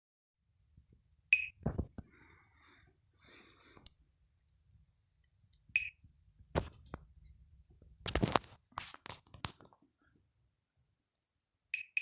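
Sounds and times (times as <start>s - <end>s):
phone being tapped: 1.4s - 2.2s.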